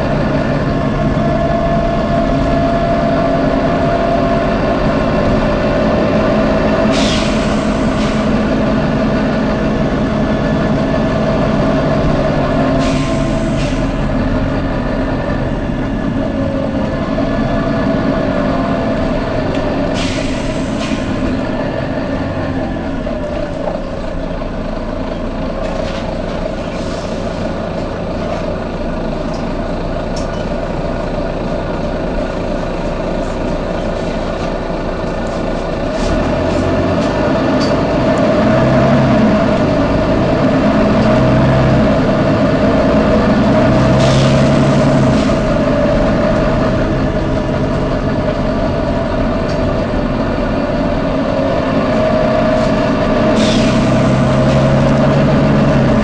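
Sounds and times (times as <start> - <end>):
bus engine droning: 0.0 - 56.0
air hissing: 6.9 - 8.5, 12.8 - 14.1, 19.9 - 21.5, 52.5 - 54.7.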